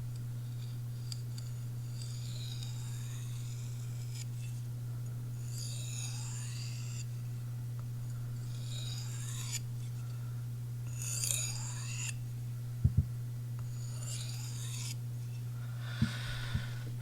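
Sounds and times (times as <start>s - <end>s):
knife blade scraping on sharpener: 0.6s - 4.6s, 5.4s - 7.1s, 8.4s - 9.9s, 10.9s - 12.2s, 13.6s - 15.5s.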